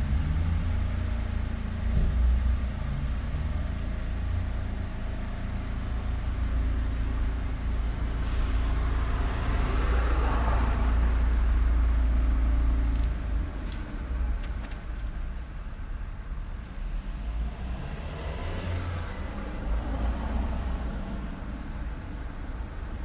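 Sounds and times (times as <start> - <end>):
low engine rumble: 0.0 - 23.0
vehicle tyres passing: 7.8 - 12.2.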